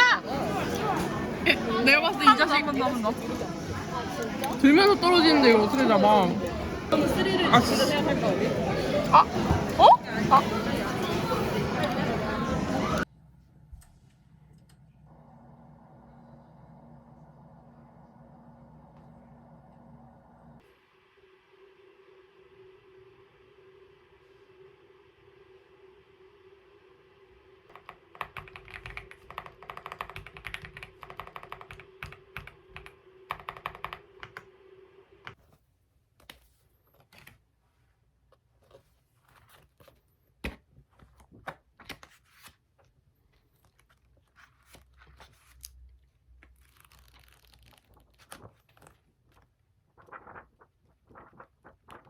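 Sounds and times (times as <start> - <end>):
typing on computer keyboard: 27.7 - 34.4.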